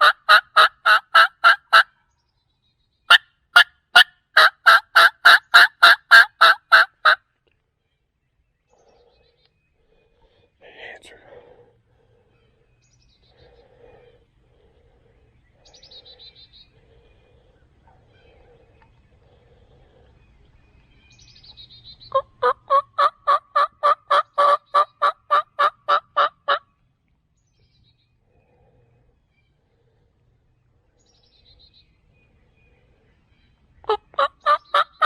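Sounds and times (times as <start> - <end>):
turkey yelps: 0.0 - 1.8, 3.6 - 7.2, 22.1 - 26.6.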